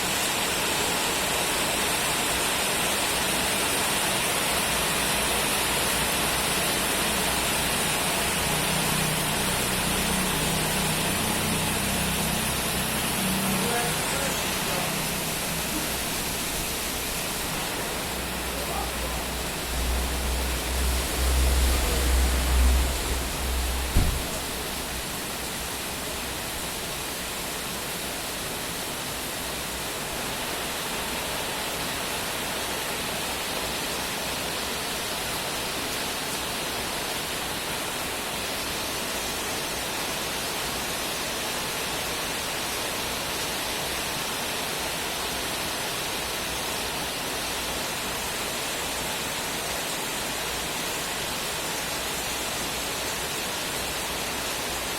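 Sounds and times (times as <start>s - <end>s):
heavy rain: 0.0s - 54.9s
loud low rumble: 8.8s - 26.7s
sharp knock: 23.8s - 24.5s.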